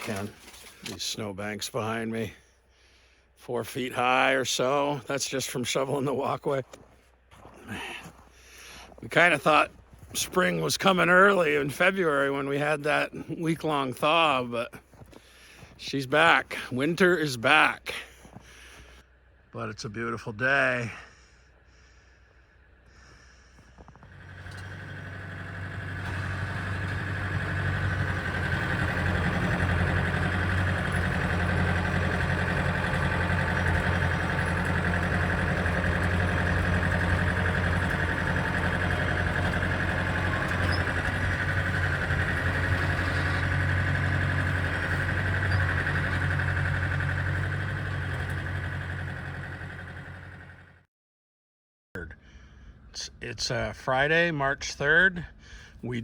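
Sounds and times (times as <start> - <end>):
tractor engine running: 0.0 - 2.0, 22.7 - 50.8.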